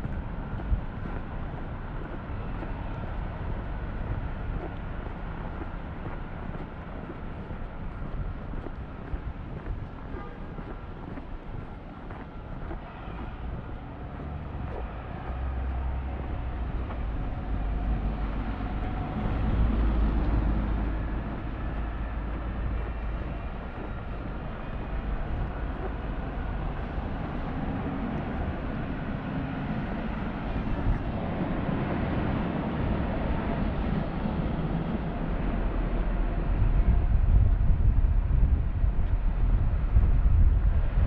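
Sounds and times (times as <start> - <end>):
street traffic rumble: 0.0 - 41.0
vehicle passing by: 12.9 - 37.0.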